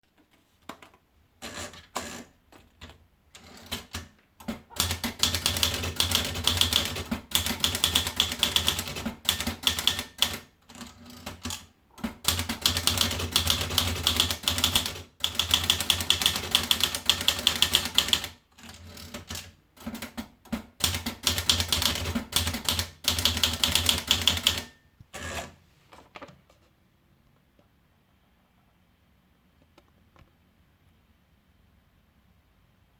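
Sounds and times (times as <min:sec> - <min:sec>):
manual typewriter typing: 0:01.4 - 0:25.5.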